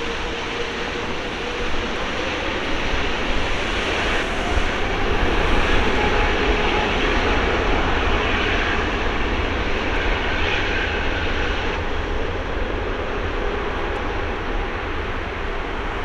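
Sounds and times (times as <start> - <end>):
jet roar on takeoff: 0.0 - 16.0.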